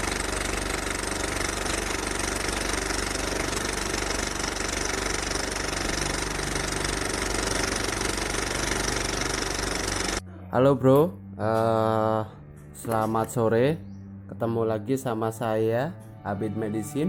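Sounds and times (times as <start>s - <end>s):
motor running with fast pulse: 0.0s - 10.2s.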